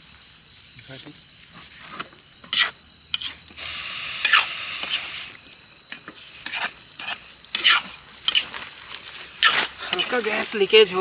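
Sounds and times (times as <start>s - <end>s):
gas stove hissing: 2.6s - 8.9s.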